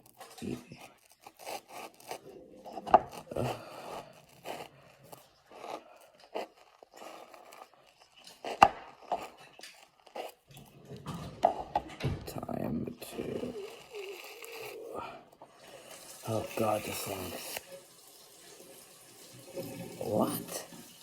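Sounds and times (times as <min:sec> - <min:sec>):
scraping and snipping foam: 0:00.0 - 0:11.8.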